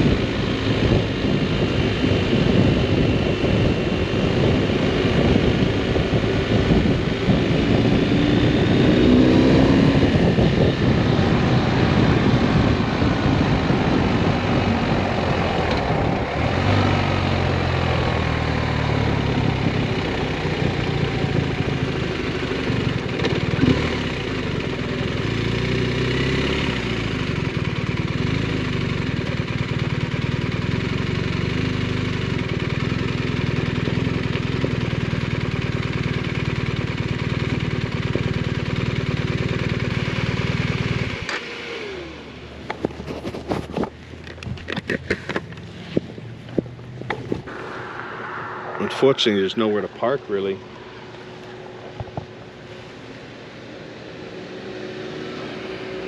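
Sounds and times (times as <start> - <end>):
wind noise on microphone: 0.0 - 17.1, 45.8 - 52.4
motorcycle engine running: 0.0 - 47.5.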